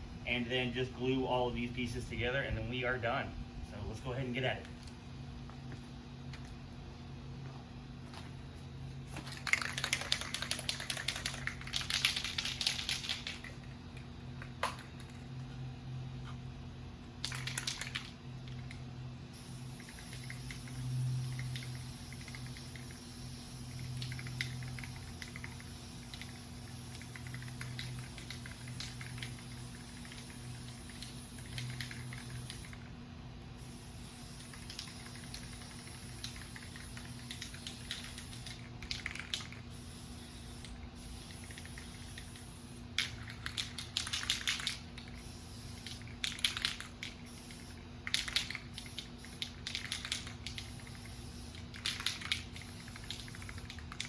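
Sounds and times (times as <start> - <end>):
spray can hissing bursts: 9.1 - 13.6, 19.4 - 32.8, 33.6 - 54.0.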